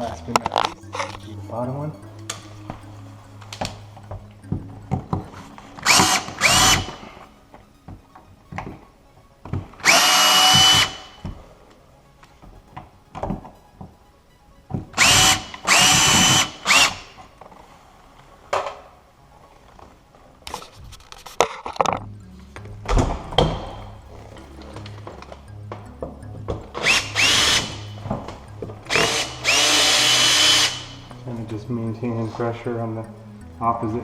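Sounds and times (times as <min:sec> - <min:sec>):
power drill whining: 0:05.0 - 0:07.2, 0:09.8 - 0:11.4, 0:15.0 - 0:17.2, 0:26.8 - 0:28.3, 0:28.9 - 0:31.1.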